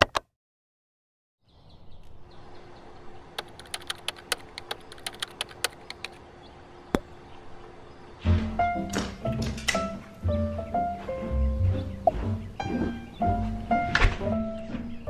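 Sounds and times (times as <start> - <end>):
small sharp clicks: 3.4 - 6.2.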